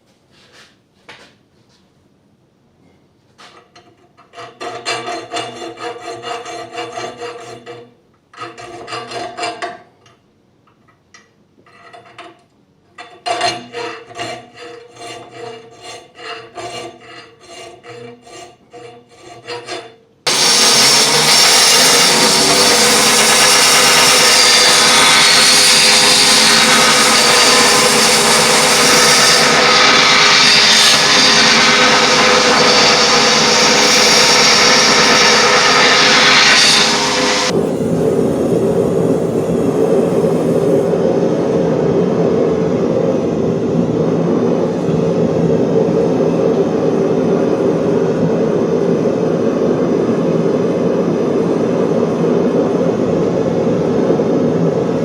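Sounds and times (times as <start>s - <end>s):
file strokes on steel blade: 4.3s - 9.5s, 13.5s - 37.6s
power grinder running: 20.3s - 40.9s.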